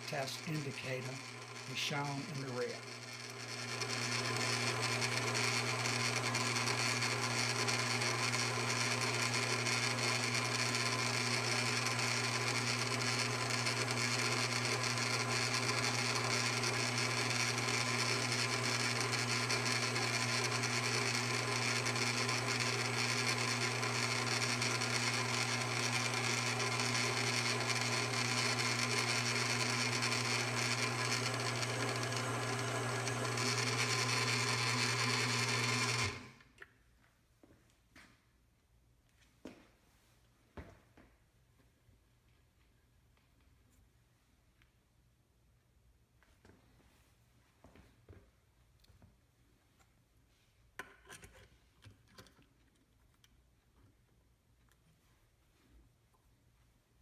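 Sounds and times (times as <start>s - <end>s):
lathe motor humming and whining: 0.1s - 36.4s.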